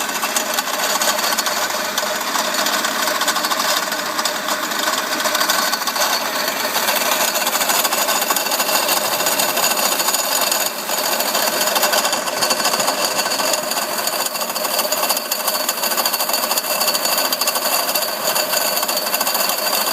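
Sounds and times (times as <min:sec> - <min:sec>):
hydraulic pump rattling: 0:00.0 - 0:19.9.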